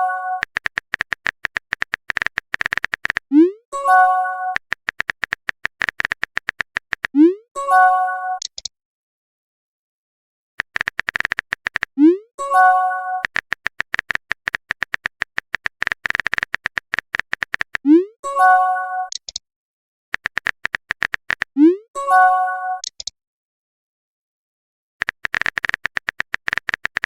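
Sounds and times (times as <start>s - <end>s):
keyboard tap clicks: 0.4s - 3.3s, 4.6s - 7.2s, 10.6s - 11.9s, 13.2s - 17.8s, 20.2s - 21.5s, 25.0s - 27.0s.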